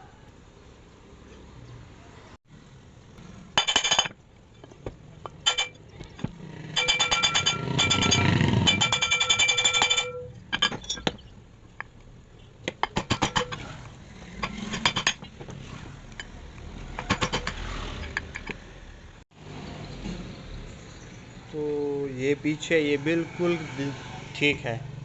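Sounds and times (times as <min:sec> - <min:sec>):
sharp metallic clicks and clinks: 0:03.6 - 0:12.0, 0:16.1 - 0:18.7.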